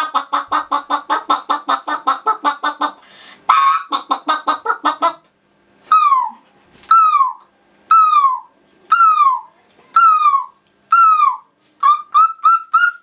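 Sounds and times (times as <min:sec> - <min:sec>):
boy imitating animal yelps: 0:03.5 - 0:05.0, 0:05.9 - 0:13.0.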